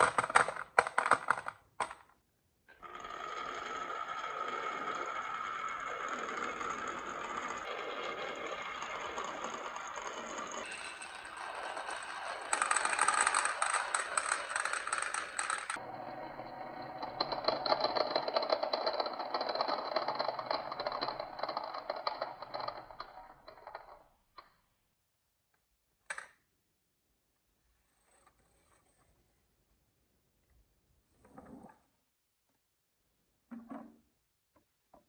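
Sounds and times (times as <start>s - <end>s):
marbles rattling down wooden track: 0.0s - 2.0s, 2.8s - 24.0s.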